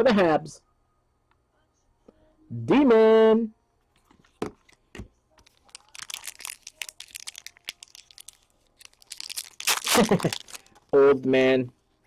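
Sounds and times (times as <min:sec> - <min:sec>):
wrapper crinkling: 0:05.4 - 0:10.8.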